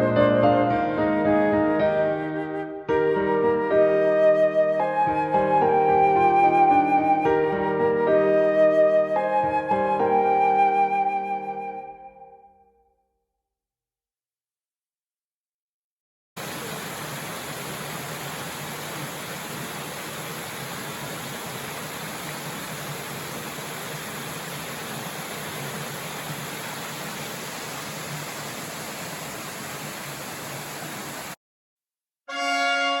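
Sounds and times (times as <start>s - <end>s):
waterfall rushing: 16.4s - 31.4s.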